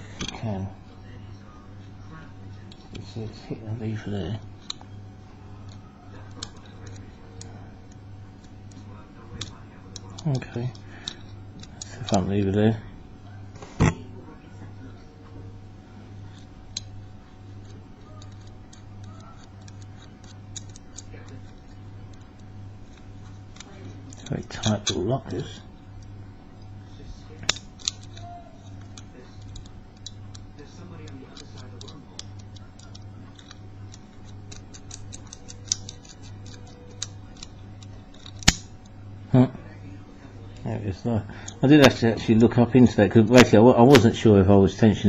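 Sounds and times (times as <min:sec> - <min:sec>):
steady low hum: 0:00.0 - 0:45.0
lock pick metallic clicks: 0:31.8 - 0:38.8.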